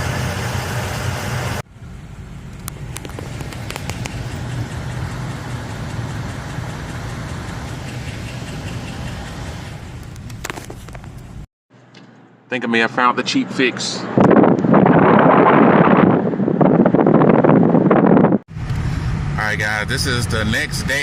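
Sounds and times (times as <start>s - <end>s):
car engine idling: 0.0s - 11.4s
engine ticking clicks: 2.4s - 11.3s.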